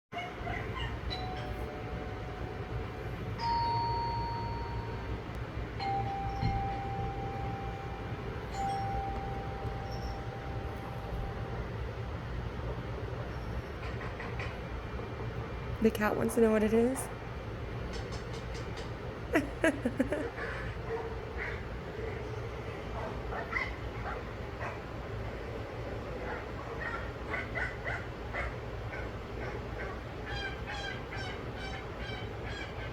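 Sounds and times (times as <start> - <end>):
steady low hum: 0.2 - 32.9
ringing chime tones: 1.1 - 12.0
steady low rumble: 1.7 - 14.0.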